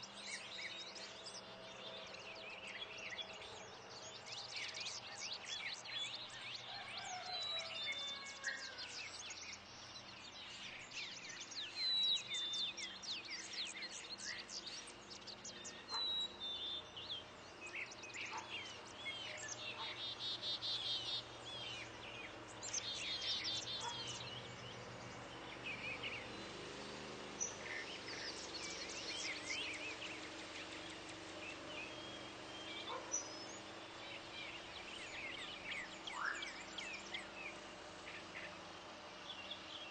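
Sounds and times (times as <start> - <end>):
songbirds chirping: 0.0 - 39.9
buzzy rattling bird calls: 17.9 - 39.9.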